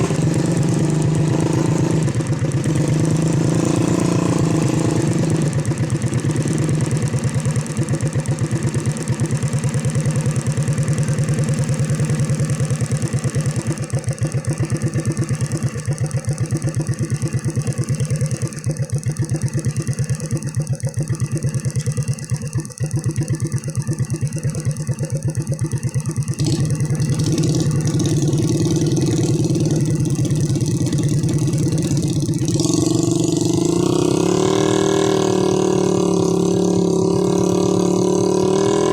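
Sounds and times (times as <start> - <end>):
small engine running: 0.0 - 38.9.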